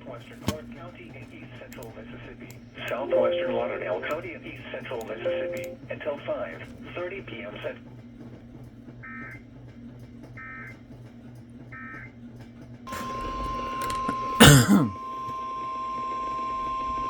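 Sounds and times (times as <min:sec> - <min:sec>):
person clearing throat: 0:14.4 - 0:15.0.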